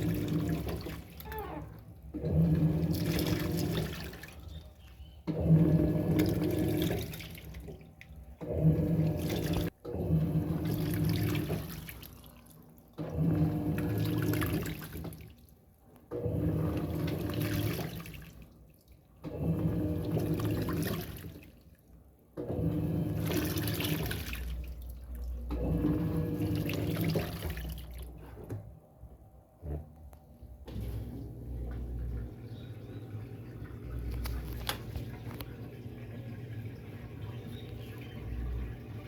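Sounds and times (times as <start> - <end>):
water and clothes sloshing: 0.0 - 28.8, 30.6 - 39.0
washing machine motor hum: 0.0 - 39.0.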